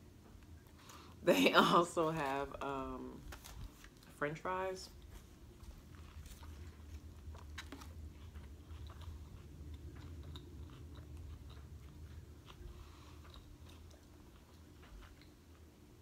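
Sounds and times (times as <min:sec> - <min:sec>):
low steady hum: 0:00.0 - 0:16.0
person chewing crunchy food: 0:05.0 - 0:16.0.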